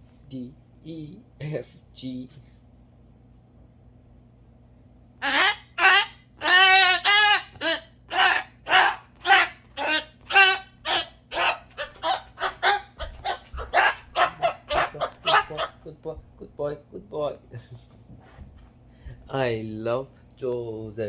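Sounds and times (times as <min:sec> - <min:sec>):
cockatoo honking squawks: 0:05.2 - 0:15.9.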